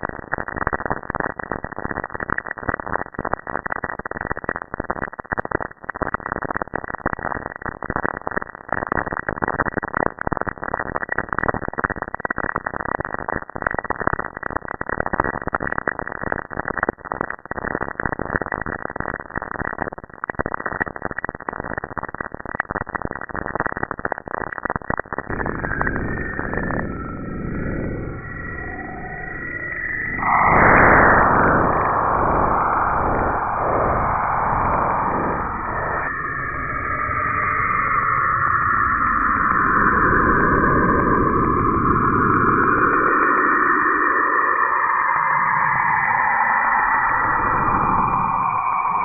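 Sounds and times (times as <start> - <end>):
crackle of static with rapid clicks: 0.0 - 49.0.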